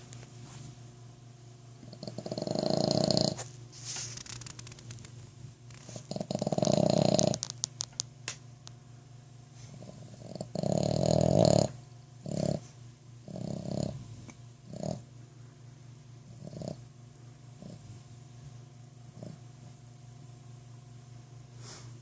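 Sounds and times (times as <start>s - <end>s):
dog snoring: 1.8s - 3.5s, 5.8s - 7.5s, 9.8s - 15.1s, 16.2s - 16.9s, 17.6s - 17.9s, 19.1s - 19.4s.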